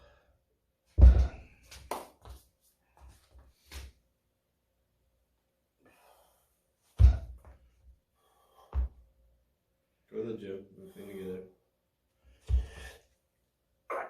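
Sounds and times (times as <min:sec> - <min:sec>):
loud heavy thud: 0:01.0 - 0:01.5.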